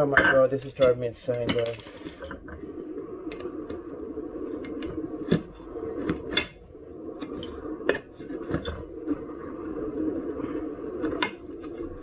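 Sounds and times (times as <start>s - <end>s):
metal tools clanking on metal: 0.7s - 2.4s.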